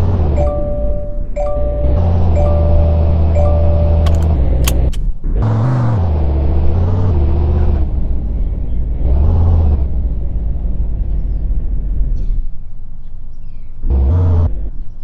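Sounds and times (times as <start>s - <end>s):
model car engine idling and revving: 1.8s - 14.9s
sharp clicks: 4.0s - 5.1s.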